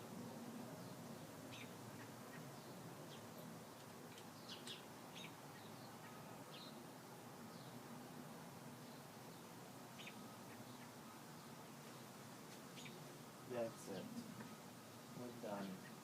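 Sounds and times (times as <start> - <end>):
faint bird chirps: 0.8 - 6.8, 8.8 - 14.6.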